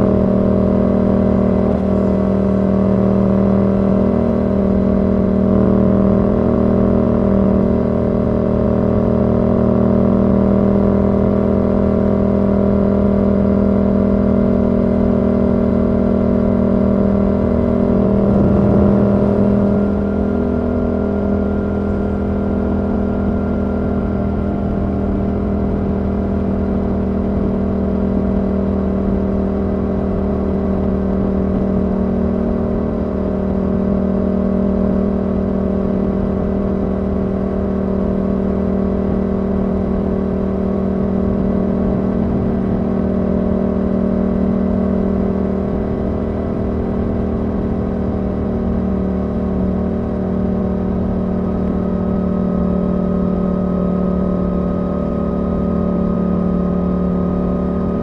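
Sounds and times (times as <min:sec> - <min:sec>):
motorcycle engine droning: 0:00.0 - 0:58.0.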